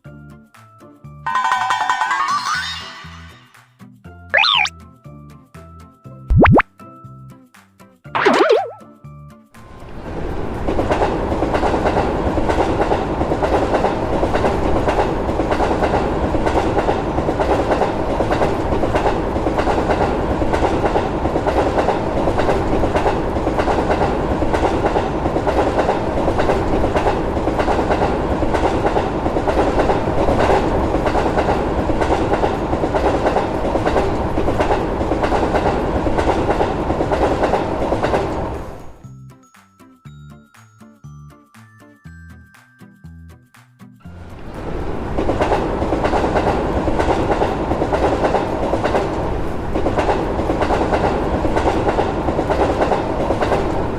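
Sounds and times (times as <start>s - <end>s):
train passing at speed: 9.6s - 39.0s, 44.1s - 53.9s
wheels clacking over rail joints: 10.5s - 38.6s, 44.2s - 53.9s.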